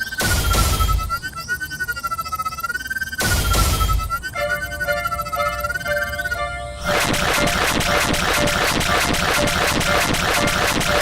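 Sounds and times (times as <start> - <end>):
rhythmic music with fast beat: 3.3 - 11.0.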